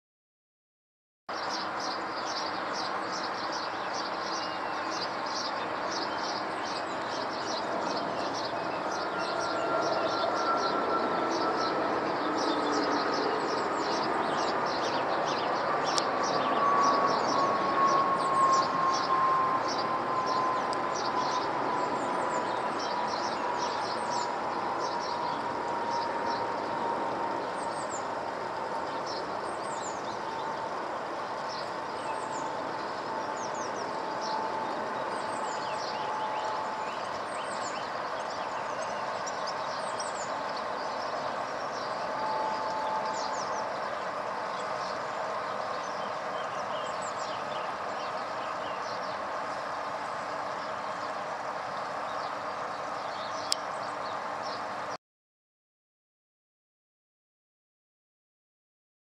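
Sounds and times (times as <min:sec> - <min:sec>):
jet airliner passing overhead: 0:01.3 - 0:55.0.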